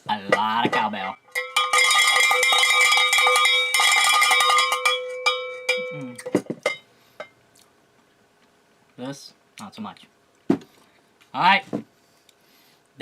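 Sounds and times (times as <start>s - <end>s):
cowbell struck rapidly: 0.7s - 6.2s.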